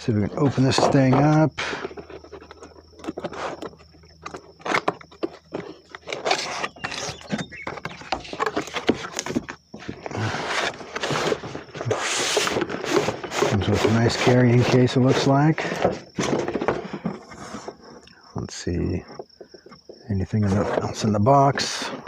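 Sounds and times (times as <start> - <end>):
cardboard box being opened: 0.4 - 17.7.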